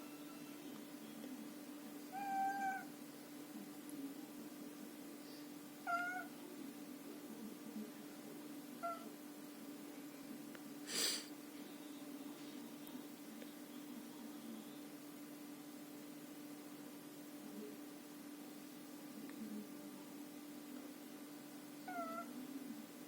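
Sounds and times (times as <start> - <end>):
faint steady hum: 0.0 - 23.0
cat meowing: 2.1 - 2.9, 5.8 - 6.3, 8.8 - 9.1, 21.9 - 22.3.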